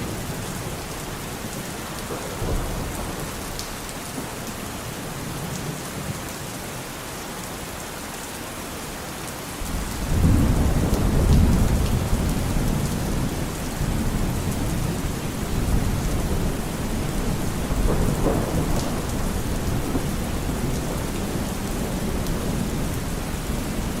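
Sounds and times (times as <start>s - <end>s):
low rolling thunder: 0.0s - 3.8s, 9.6s - 24.0s
heavy rain falling: 0.0s - 24.0s.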